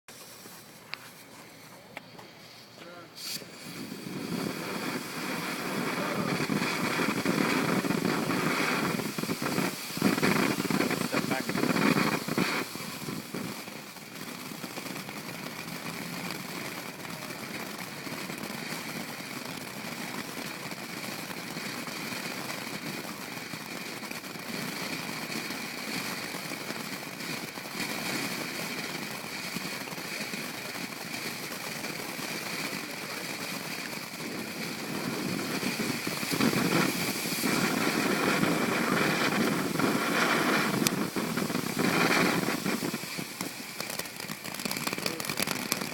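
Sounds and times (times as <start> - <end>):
fireworks hissing and crackling: 0.1 - 45.9.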